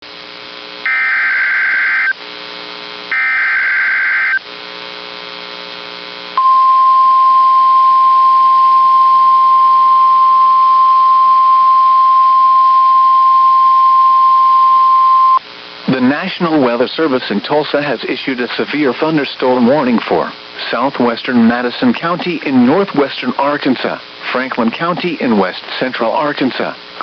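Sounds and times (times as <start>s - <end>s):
buzzy data bursts: 0.3s - 6.4s.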